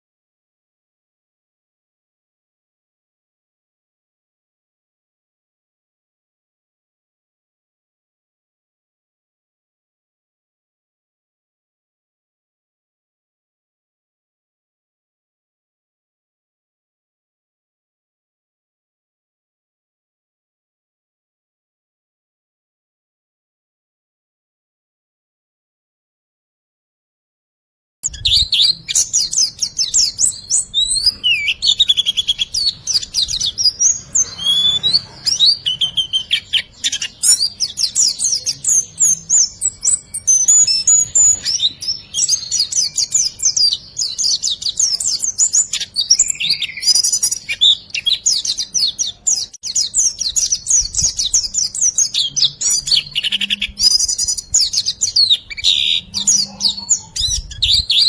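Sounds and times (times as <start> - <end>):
songbird chirping and trilling: 28.0 - 58.0.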